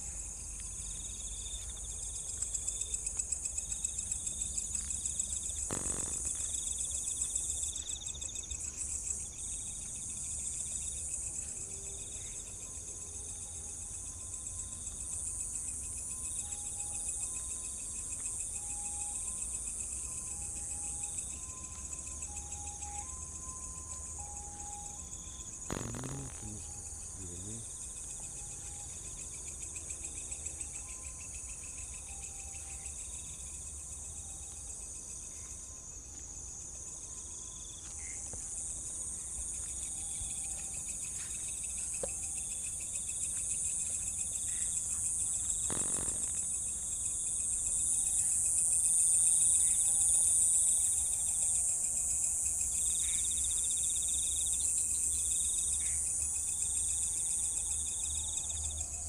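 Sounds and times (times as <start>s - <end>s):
crickets trilling: 0.0s - 59.0s
steady high insect buzz: 0.0s - 59.0s.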